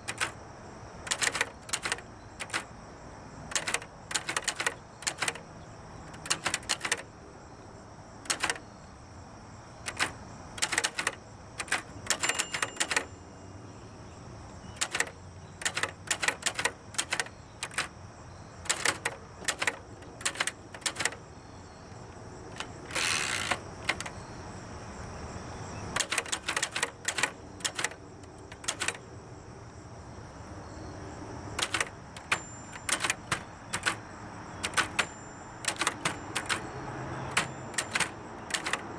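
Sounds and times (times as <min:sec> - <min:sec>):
typewriter carriage rasp: 0:00.0 - 0:00.4, 0:01.0 - 0:02.7, 0:03.5 - 0:07.1, 0:08.2 - 0:08.6, 0:09.8 - 0:13.2, 0:14.8 - 0:18.0, 0:18.6 - 0:21.2, 0:22.5 - 0:24.2, 0:25.9 - 0:29.0, 0:31.6 - 0:38.9
typewriter type-bar strikes: 0:00.0 - 0:00.4, 0:01.0 - 0:02.7, 0:03.5 - 0:07.1, 0:08.2 - 0:08.7, 0:09.8 - 0:13.2, 0:14.7 - 0:18.0, 0:18.6 - 0:21.3, 0:22.0 - 0:24.2, 0:25.9 - 0:29.0, 0:31.6 - 0:38.9.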